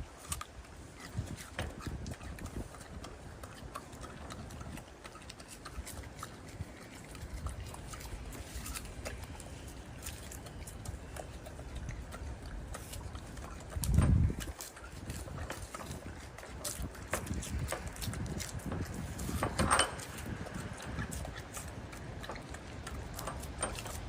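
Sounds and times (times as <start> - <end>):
small eating clicks: 0.0 - 24.0.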